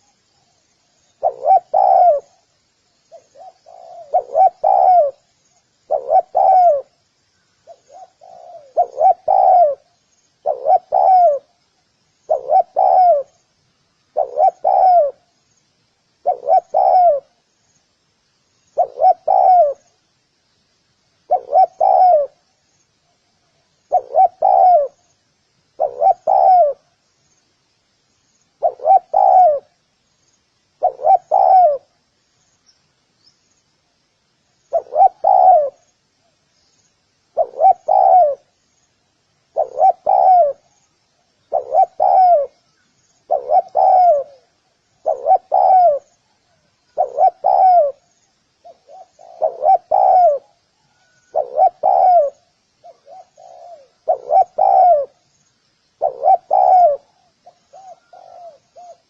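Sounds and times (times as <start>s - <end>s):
small birds chirping: 0.0s - 59.0s
dove cooing: 1.0s - 2.5s, 3.1s - 5.3s, 5.9s - 7.0s, 7.6s - 11.6s, 12.3s - 13.4s, 14.1s - 15.3s, 16.2s - 17.4s, 18.8s - 20.0s, 21.3s - 22.4s, 23.9s - 25.1s, 25.7s - 26.9s, 28.6s - 29.8s, 30.8s - 32.0s, 34.7s - 35.9s, 37.3s - 38.6s, 39.5s - 40.8s, 41.4s - 55.3s, 56.0s - 59.0s.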